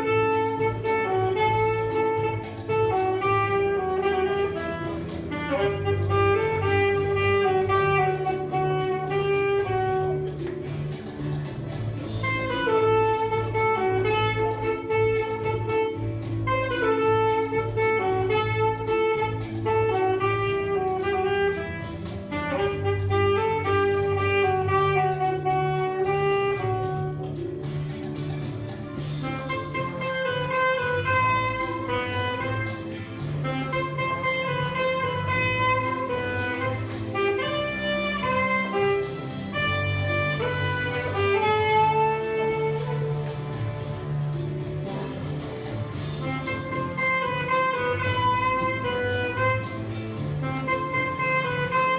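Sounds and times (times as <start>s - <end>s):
instrumental music with beat: 0.0s - 51.9s.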